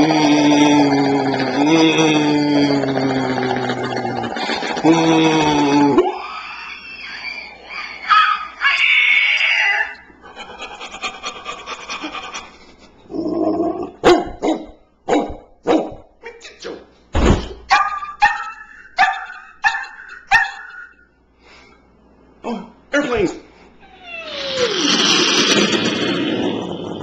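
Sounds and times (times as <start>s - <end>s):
deep thump: 17.2s - 17.6s
person imitating dog barks: 17.7s - 20.8s
fluttering mouth sound: 23.9s - 27.0s.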